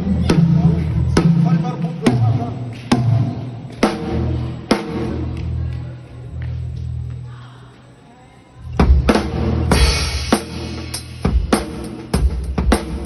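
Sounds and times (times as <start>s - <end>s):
drum kit hits: 8.8s - 13.0s.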